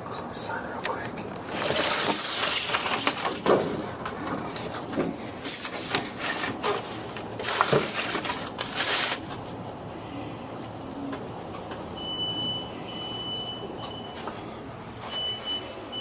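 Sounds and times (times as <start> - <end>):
clicks and knocks of objects: 1.3 - 9.6
rubbing and scraping: 1.5 - 3.4.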